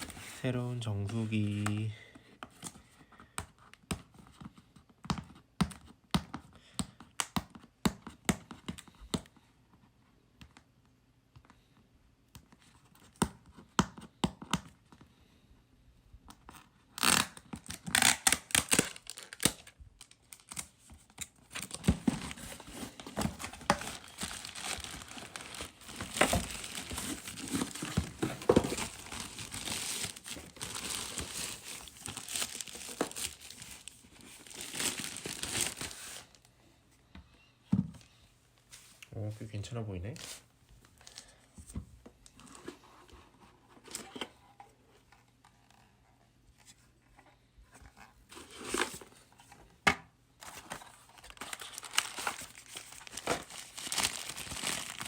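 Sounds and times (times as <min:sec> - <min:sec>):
plastic wrapping tearing: 0:17.0 - 0:20.7, 0:21.6 - 0:36.3, 0:51.3 - 0:55.0
plastic crinkling and rustling: 0:17.0 - 0:36.5, 0:50.4 - 0:55.0.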